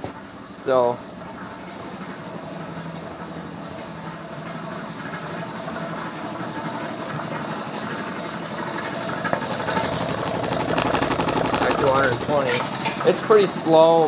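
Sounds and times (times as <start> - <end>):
air compressor running: 5.0 - 14.0.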